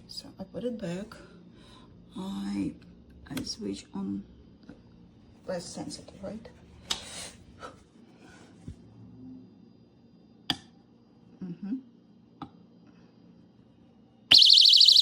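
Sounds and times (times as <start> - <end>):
high-pitched warbling alarm siren: 14.3 - 15.0.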